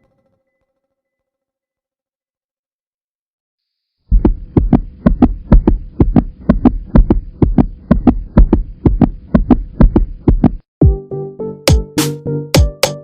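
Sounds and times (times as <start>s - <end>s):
heartbeat thumps: 4.1s - 10.6s.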